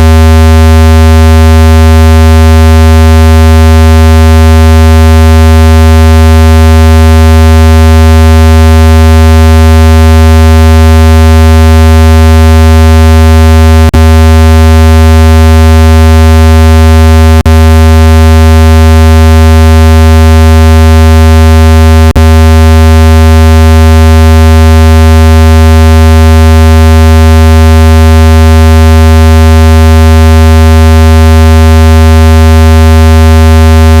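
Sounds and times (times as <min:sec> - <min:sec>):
low buzzing tone: 0:11.1 - 0:27.2.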